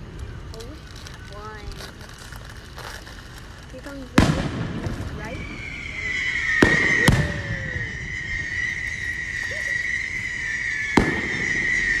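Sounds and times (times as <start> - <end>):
firework bangs: 2.8 - 12.0
high firework whistle: 4.6 - 12.0.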